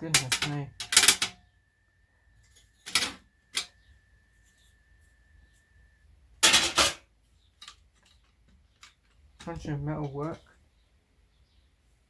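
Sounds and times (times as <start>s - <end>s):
faint steady high tone: 0.0s - 6.4s
metal parts clattering: 0.2s - 1.4s, 2.8s - 3.7s, 6.4s - 7.0s.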